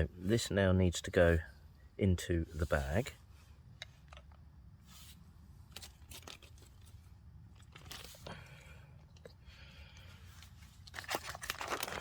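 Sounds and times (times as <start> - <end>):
small clicks and scrapes: 3.7 - 8.3
plastic bag crinkling: 10.8 - 12.0.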